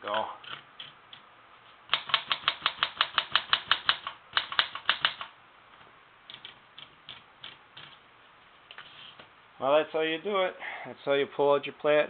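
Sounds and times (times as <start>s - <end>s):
typewriter clicking rapidly: 1.9s - 5.3s.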